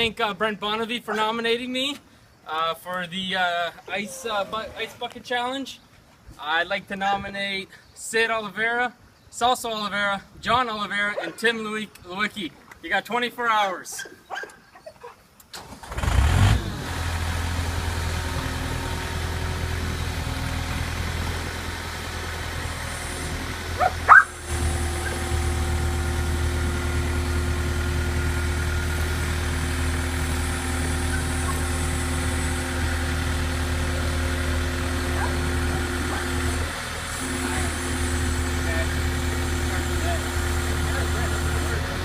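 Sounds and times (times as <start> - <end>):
skid steer engine running: 15.8 - 42.0.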